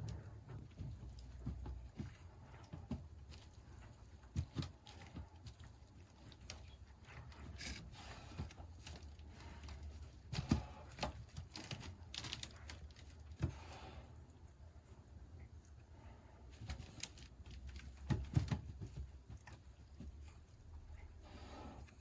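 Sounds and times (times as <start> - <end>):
paws thudding on wheel: 0.0 - 13.6, 16.5 - 20.5.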